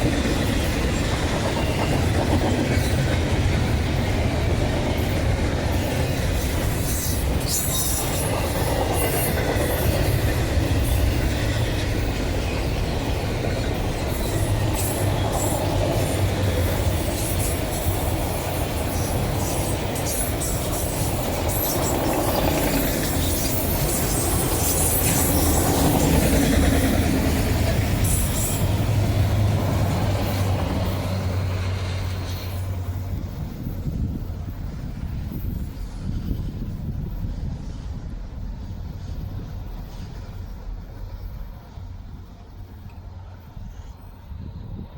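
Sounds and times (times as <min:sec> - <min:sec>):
train wheels rumbling on rail: 0:00.0 - 0:44.9.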